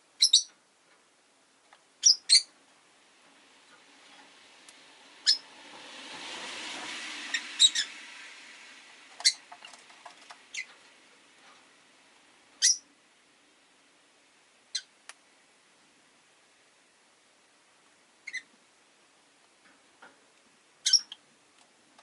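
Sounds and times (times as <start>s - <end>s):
lovebirds chirping: 0.2s - 0.5s, 2.0s - 2.5s, 5.2s - 5.4s, 9.2s - 9.5s, 10.5s - 10.8s, 12.6s - 12.9s, 20.8s - 21.2s
passing street traffic: 2.5s - 13.5s.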